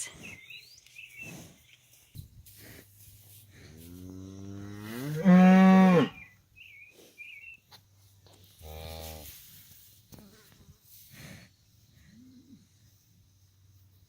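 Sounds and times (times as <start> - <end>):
cow mooing: 4.1 - 6.2.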